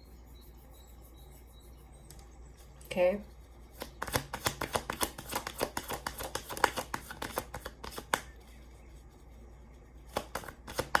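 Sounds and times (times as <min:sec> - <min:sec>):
cards being shuffled: 0:03.8 - 0:08.3, 0:10.1 - 0:11.0.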